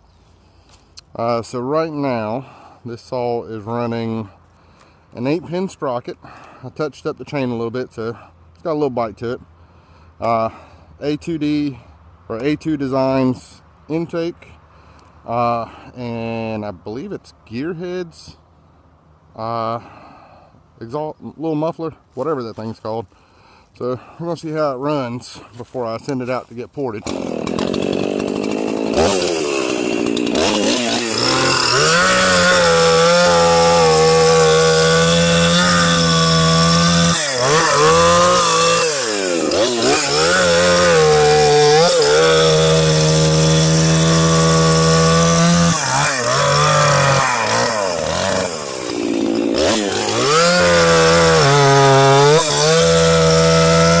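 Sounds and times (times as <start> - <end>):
chainsaw cutting wood: 27.0 - 54.0.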